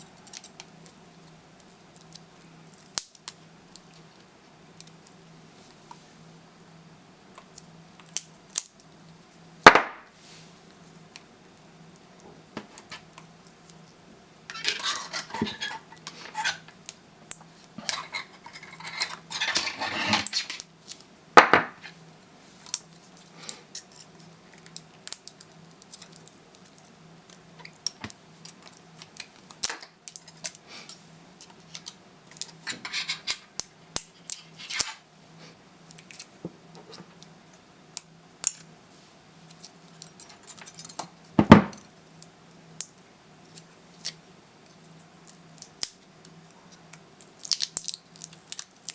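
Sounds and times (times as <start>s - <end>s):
metal scraping: 14.5s - 16.6s, 17.8s - 20.6s.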